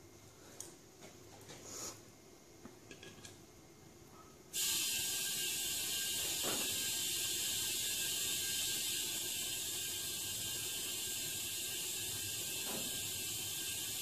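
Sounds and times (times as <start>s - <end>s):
compressed air hissing: 4.5s - 14.0s.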